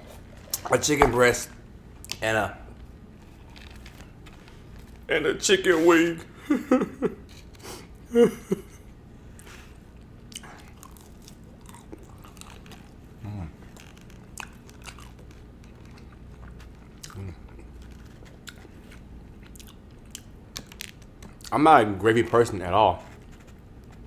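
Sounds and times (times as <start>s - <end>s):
chewing crispy fried chicken: 9.3s - 21.6s.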